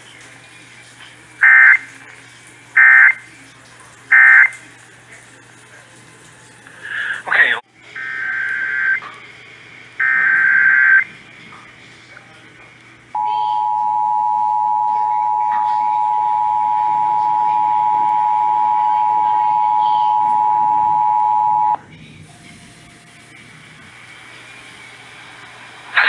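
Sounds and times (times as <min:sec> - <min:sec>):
two-tone alert signal: 0:01.4 - 0:01.8, 0:04.1 - 0:04.5, 0:10.0 - 0:11.0, 0:13.2 - 0:21.8.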